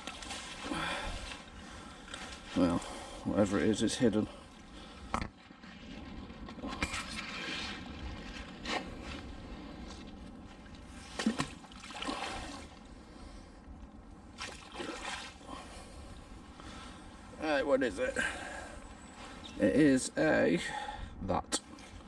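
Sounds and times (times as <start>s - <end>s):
water splashing and dripping: 0.0s - 2.5s, 14.4s - 15.4s.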